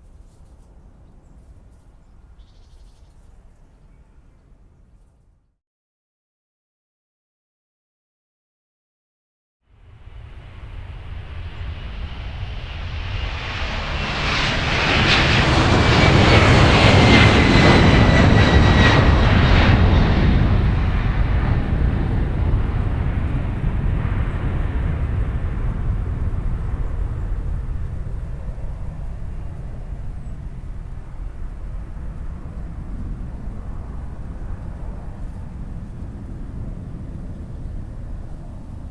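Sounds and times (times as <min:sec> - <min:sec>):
jet engine roar: 0:09.9 - 0:38.9.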